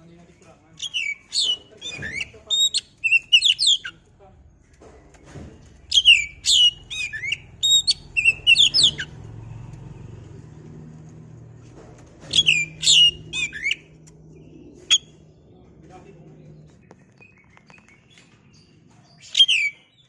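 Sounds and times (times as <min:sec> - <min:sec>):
bird song with whistles: 0:00.8 - 0:03.9, 0:05.9 - 0:09.1, 0:12.3 - 0:13.8, 0:14.9 - 0:15.1, 0:19.2 - 0:20.0.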